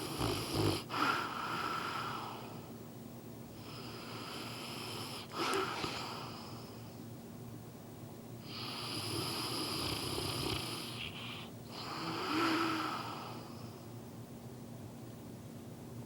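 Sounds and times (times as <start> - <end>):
dog snoring: 0.0 - 2.7, 3.6 - 6.8, 8.4 - 13.8.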